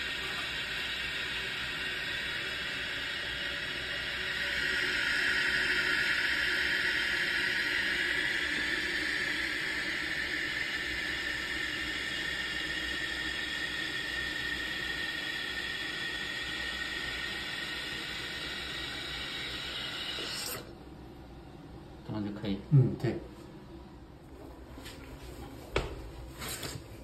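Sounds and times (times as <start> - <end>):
toilet fill valve hissing: 0.0 - 20.9.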